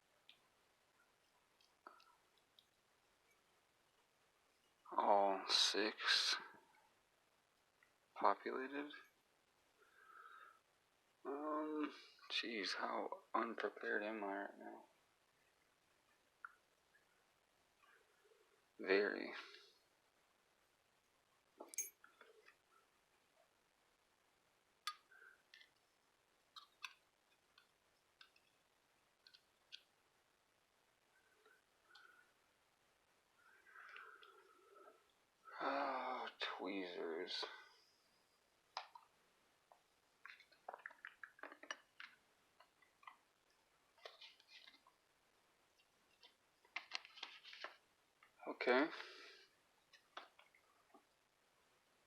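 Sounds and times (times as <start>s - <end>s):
tweezers and metal parts clicking: 21.6s - 21.9s.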